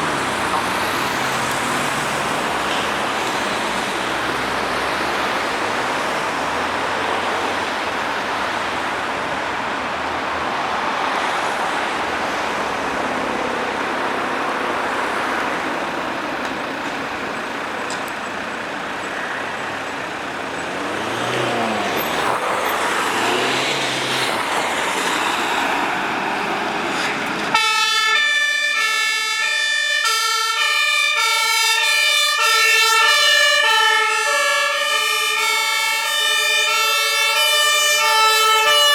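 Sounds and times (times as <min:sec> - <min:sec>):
vehicle passing: 0:00.0 - 0:28.1, 0:30.1 - 0:38.9
road traffic: 0:00.0 - 0:38.9
two-tone emergency siren: 0:27.5 - 0:38.9.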